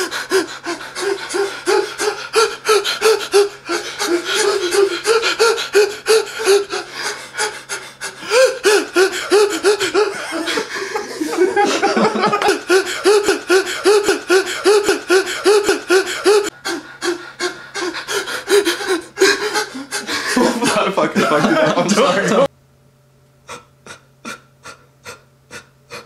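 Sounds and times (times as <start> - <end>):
heavy breathing gasps: 0.0 - 11.4, 12.5 - 20.7.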